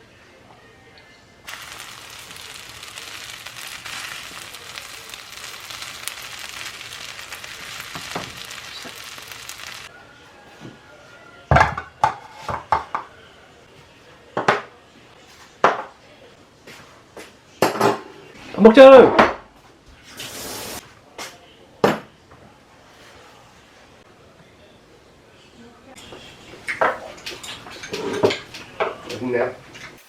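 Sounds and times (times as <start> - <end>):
rice sizzling in a pan: 1.5 - 9.9, 20.2 - 20.8
metal utensils clanking on dishes: 26.6 - 30.0.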